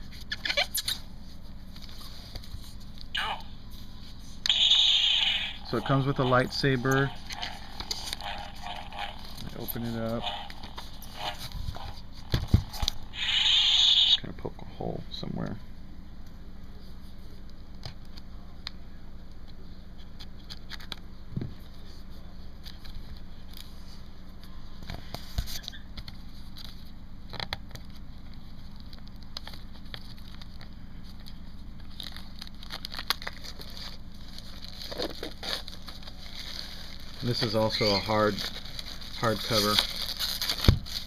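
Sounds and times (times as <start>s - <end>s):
low hum: 0.8s - 16.2s
plastic packaging tearing: 31.8s - 41.0s.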